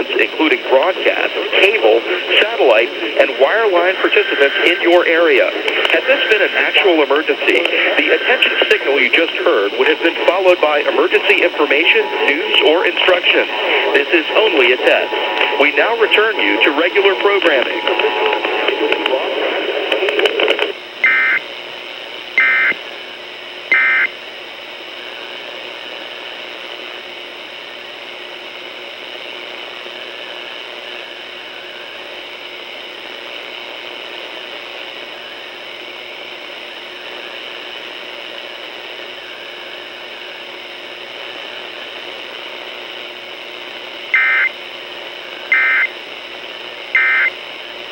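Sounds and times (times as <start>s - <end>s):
radio hiss: 0.0s - 47.9s
two-tone digital squawks: 44.2s - 44.5s, 45.5s - 45.9s, 47.0s - 47.3s.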